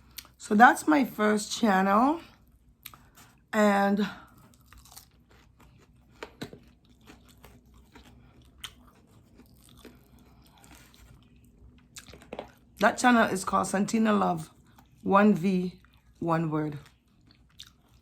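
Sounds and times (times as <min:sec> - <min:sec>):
crunching and chewing: 0:02.3 - 0:03.5, 0:04.1 - 0:12.8, 0:14.5 - 0:15.1, 0:15.7 - 0:18.0.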